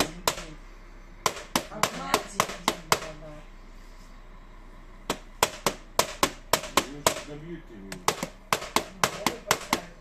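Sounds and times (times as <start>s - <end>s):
sharp knocks on hard surface: 1.2s - 3.2s, 5.1s - 7.3s, 7.9s - 10.0s.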